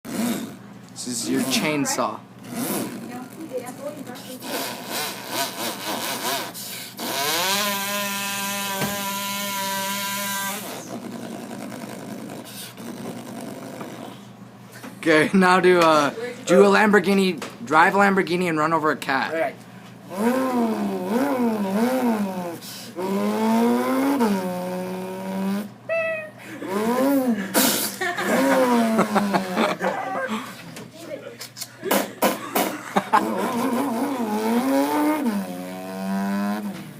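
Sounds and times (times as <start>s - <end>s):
boy imitating chainsaw: 0.1s - 0.6s, 1.3s - 14.2s, 20.1s - 30.5s, 31.8s - 36.9s.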